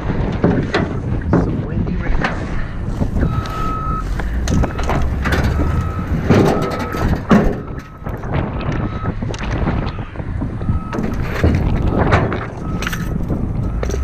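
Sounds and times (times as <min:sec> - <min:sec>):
knocks and clatter: 0:00.0 - 0:09.9, 0:10.8 - 0:14.0
wind rumble on microphone: 0:00.0 - 0:14.0
reversing alarm beeping: 0:03.2 - 0:09.2, 0:09.8 - 0:11.2, 0:11.8 - 0:14.0.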